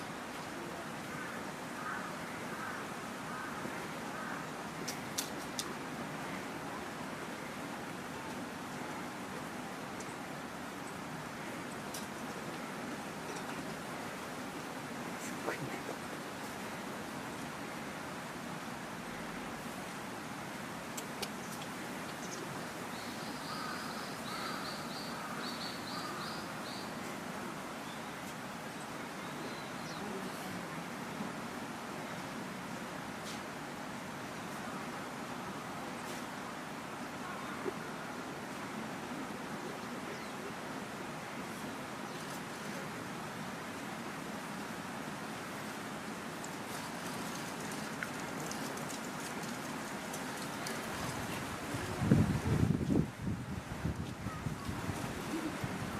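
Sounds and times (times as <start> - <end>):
outdoor background hiss: 0.0 - 55.9
faint short bird calls: 23.0 - 27.0.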